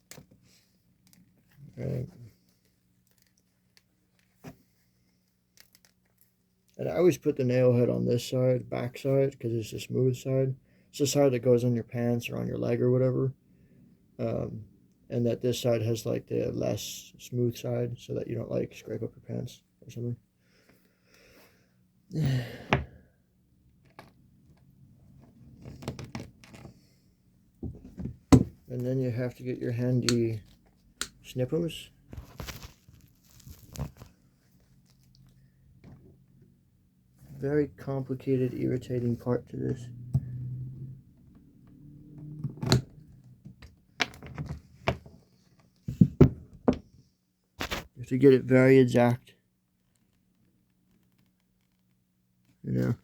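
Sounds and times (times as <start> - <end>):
small crinkly clicks and rustles: 0.0 - 6.8, 32.1 - 36.0, 49.6 - 52.9.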